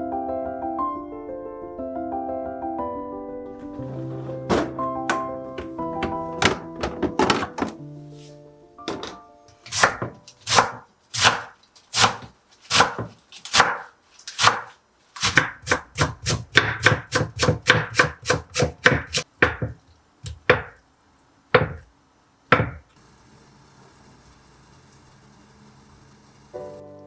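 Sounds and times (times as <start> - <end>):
knife chopping on cutting board: 3.6 - 7.7, 8.9 - 20.8, 21.6 - 21.8, 22.5 - 22.8.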